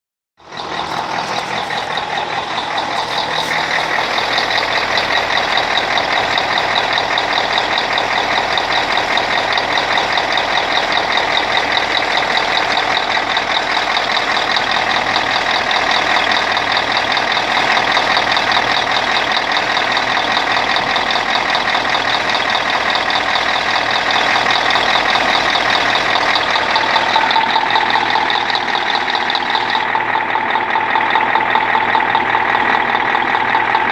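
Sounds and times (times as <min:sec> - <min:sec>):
diesel engine running: 0:00.4 - 0:33.9
engine knock: 0:00.4 - 0:33.9.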